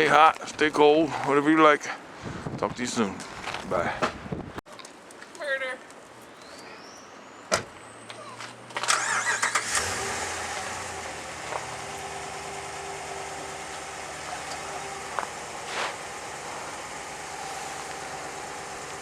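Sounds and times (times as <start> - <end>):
engine cranking and idling: 8.8 - 19.0.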